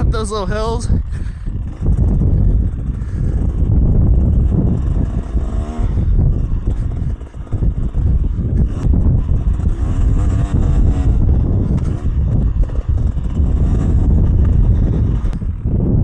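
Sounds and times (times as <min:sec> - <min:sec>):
two-stroke dirt bike engine revving: 0:00.0 - 0:16.0.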